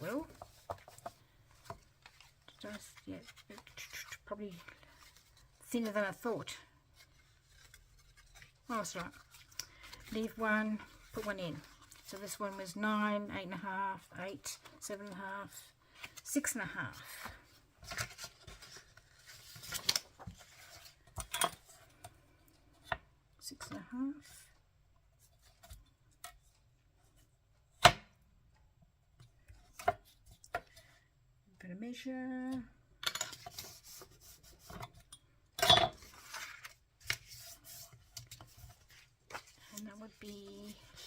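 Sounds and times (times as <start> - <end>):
paper scraping and rustling: 0.0 - 12.8, 17.8 - 21.1, 36.0 - 41.0.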